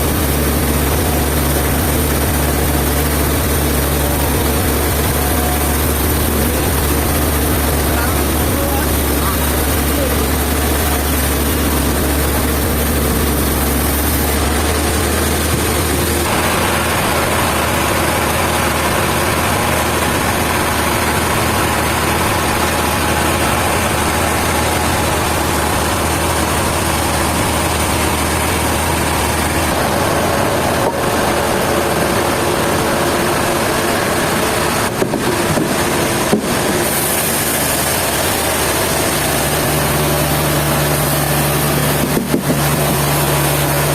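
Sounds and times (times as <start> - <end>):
sawmill machinery droning: 0.0 - 43.9.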